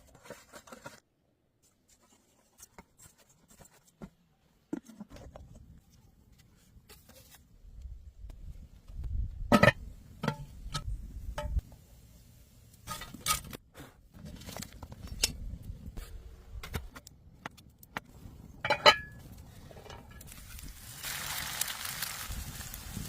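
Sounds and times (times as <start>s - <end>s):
metal cookware clinking: 18.6s - 19.2s.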